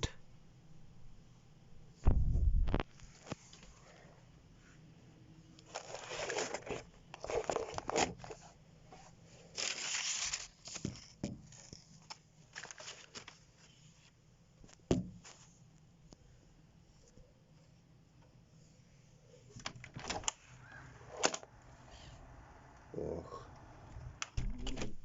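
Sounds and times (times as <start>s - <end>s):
rustling and crinkling: 5.6s - 15.8s.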